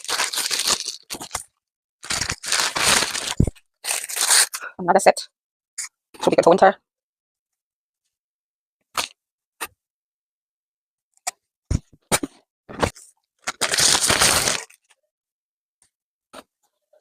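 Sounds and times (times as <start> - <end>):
plastic packaging crackling: 0.0 - 1.4, 2.0 - 4.5, 13.4 - 14.8.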